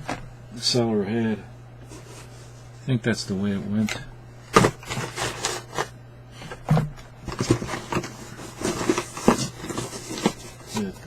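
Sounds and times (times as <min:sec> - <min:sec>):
cardboard boxes rubbing and scraping: 0:07.3 - 0:10.7.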